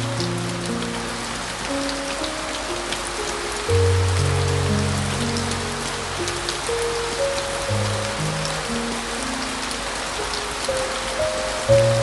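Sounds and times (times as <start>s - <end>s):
heavy rain pattering: 0.0s - 12.0s
low piano chord: 0.0s - 12.0s
soft piano notes: 0.0s - 12.0s.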